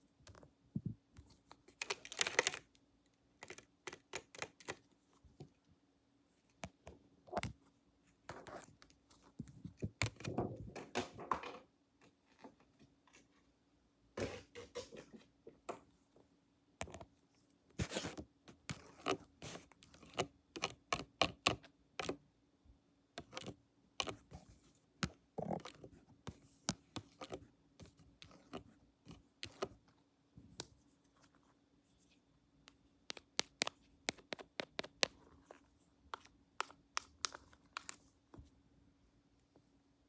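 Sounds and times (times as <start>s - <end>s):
clicks taps and scratches: 3.4s - 5.6s, 16.8s - 17.1s, 23.2s - 38.5s.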